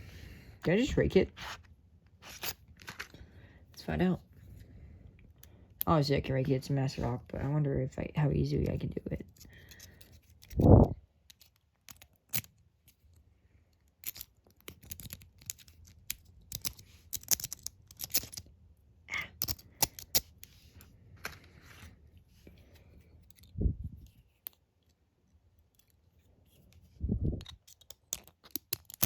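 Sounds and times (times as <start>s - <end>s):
lock pick clicking and scraping: 2.2s - 3.1s, 9.3s - 18.6s, 19.2s - 21.4s, 22.5s - 29.0s.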